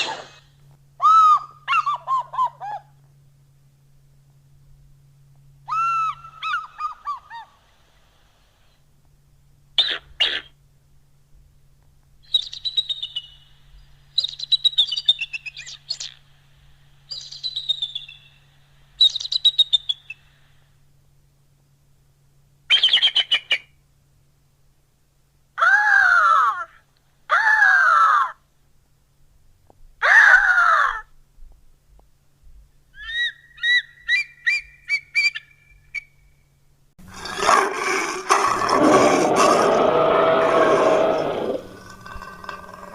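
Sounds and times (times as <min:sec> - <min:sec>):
creature screeches: 0:37.1 - 0:42.9.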